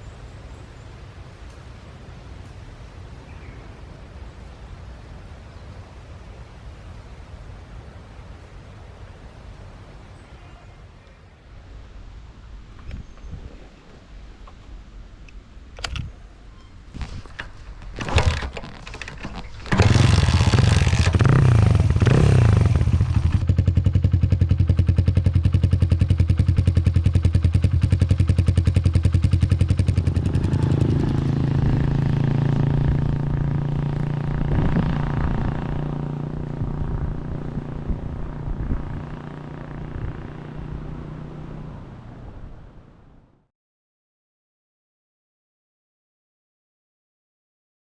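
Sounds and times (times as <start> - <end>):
motorcycle engine running: 18.0 - 42.1.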